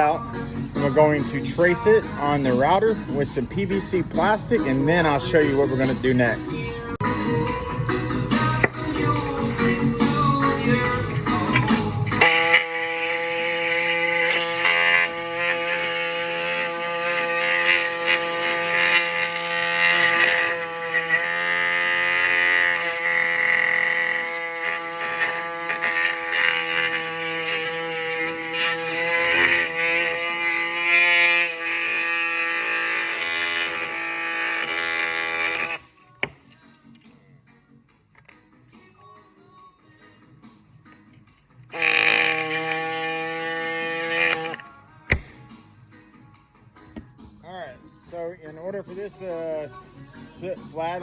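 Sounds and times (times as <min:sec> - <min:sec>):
router cutting plastic: 0:11.3 - 0:35.9, 0:41.7 - 0:45.3.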